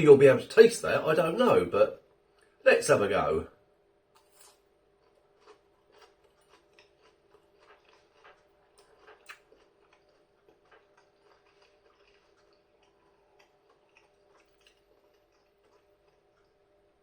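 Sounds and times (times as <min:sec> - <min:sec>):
faint steady hum: 0:00.0 - 0:17.0
chewing burger: 0:04.1 - 0:17.0.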